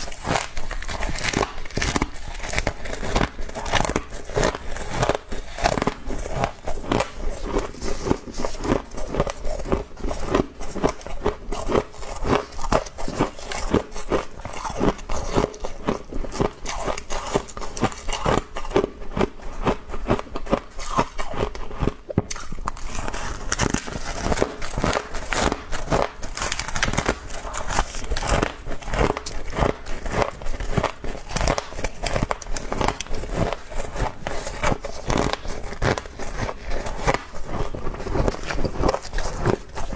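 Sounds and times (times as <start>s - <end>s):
frost crunching being chewed: 0.0s - 39.9s.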